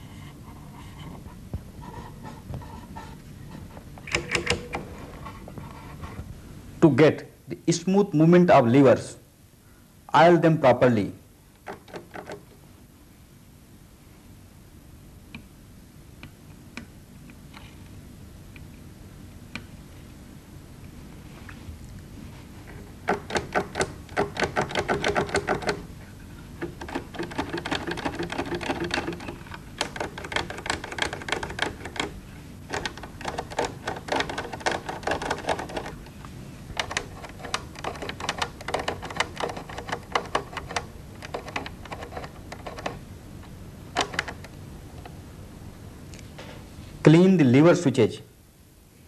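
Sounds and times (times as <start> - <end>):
switches clicking: 4.0 - 4.9.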